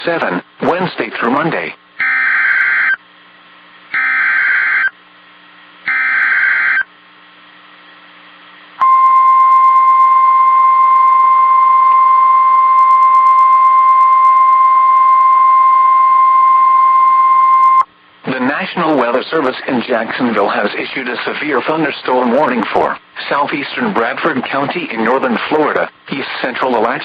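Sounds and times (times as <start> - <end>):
buzzing digital data tones: 2.0 - 3.0, 3.9 - 5.0, 5.9 - 6.9
steady alarm tone: 2.0 - 3.0, 3.9 - 5.0, 5.8 - 6.9, 8.8 - 17.8.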